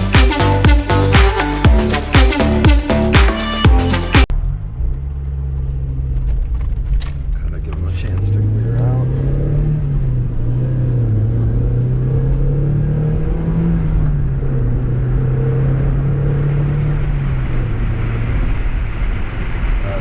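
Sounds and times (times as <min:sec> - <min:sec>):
road rumble: 0:04.2 - 0:20.0.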